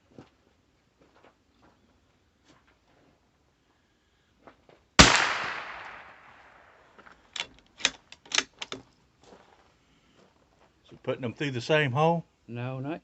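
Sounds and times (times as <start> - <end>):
rifle shot with echo: 5.0 - 6.9.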